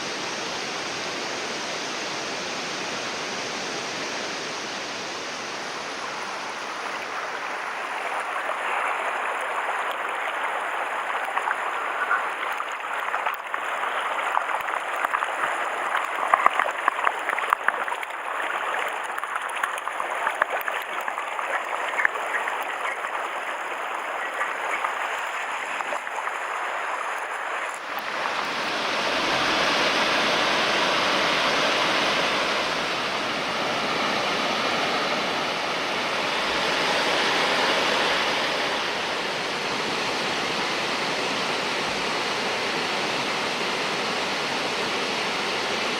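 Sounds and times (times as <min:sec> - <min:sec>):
stream rushing over rocks: 0:02.7 - 0:35.2
small ticks and splashes: 0:06.3 - 0:28.7.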